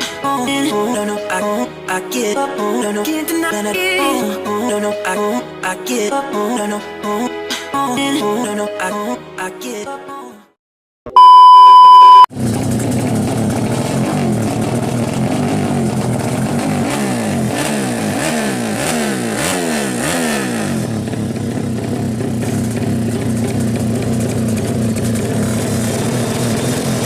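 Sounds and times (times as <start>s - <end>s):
loud steady beep: 11.2s - 12.3s
motorcycle engines revving: 12.4s - 27.0s.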